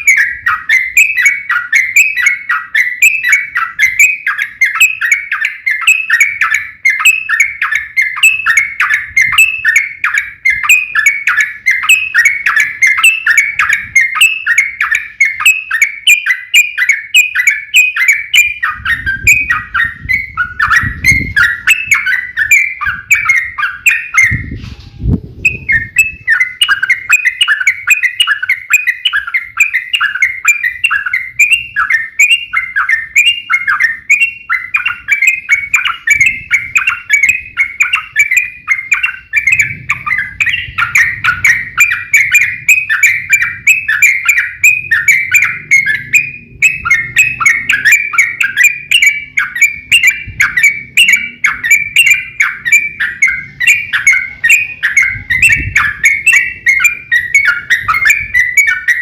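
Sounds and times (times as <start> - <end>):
bird chattering song: 0.0 - 59.0.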